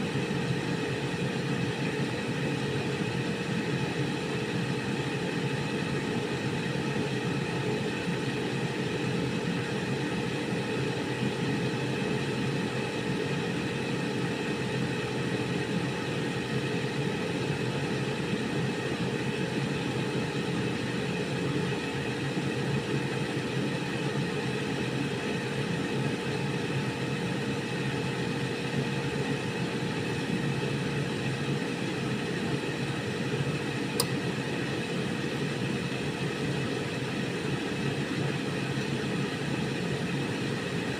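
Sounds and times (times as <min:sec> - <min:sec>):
air fryer fan whirring: 0:00.0 - 0:40.9
sharp click: 0:34.0 - 0:34.2.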